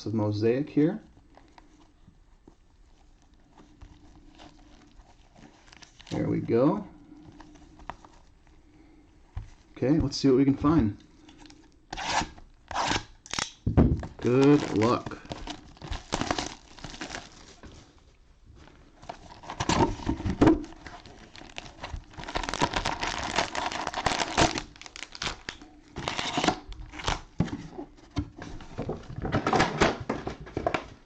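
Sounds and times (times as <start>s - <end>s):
cellophane wrappers crinkling: 0.8s - 9.0s, 13.3s - 27.4s.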